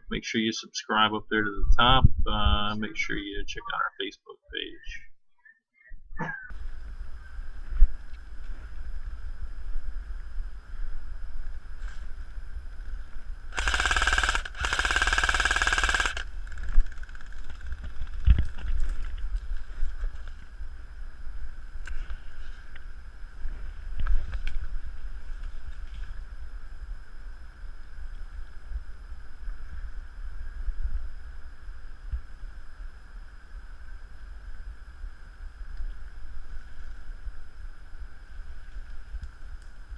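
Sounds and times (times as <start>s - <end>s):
airsoft gun full-auto bursts: 13.5s - 17.9s.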